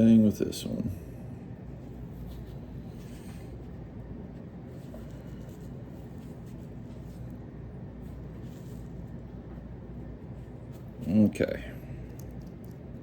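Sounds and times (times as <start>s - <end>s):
steady low hum: 0.0s - 13.0s
faint scratching and rubbing: 1.9s - 3.8s.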